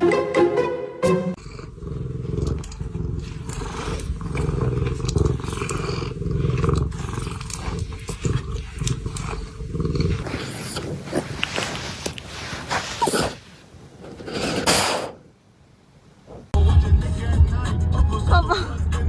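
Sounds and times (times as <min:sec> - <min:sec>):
cat purring: 0:01.3 - 0:15.1.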